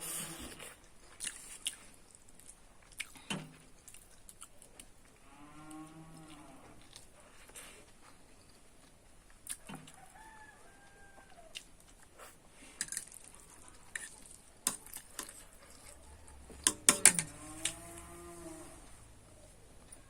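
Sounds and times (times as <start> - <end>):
person eating noodles: 0.0 - 2.0, 11.5 - 17.9.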